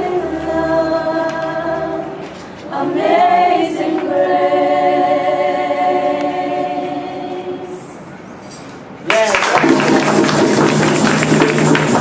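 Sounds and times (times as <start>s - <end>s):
women singing in harmony: 0.0s - 8.1s.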